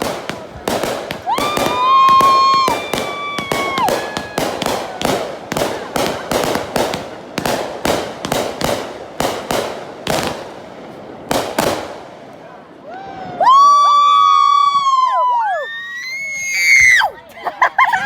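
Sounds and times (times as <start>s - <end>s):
fireworks bangs: 0.0s - 13.6s
high-pitched firework whistle: 1.2s - 5.2s.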